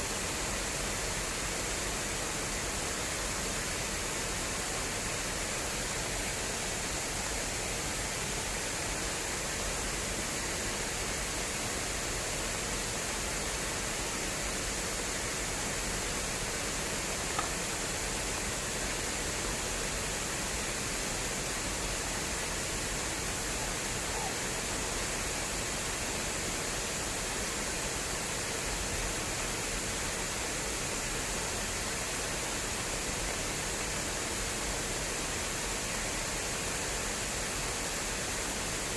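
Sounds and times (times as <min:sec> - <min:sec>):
faint tick: 0:17.4 - 0:17.6.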